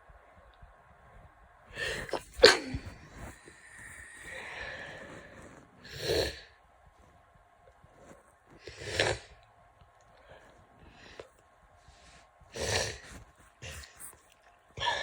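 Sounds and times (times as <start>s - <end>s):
person sneezing: 1.8s - 3.3s.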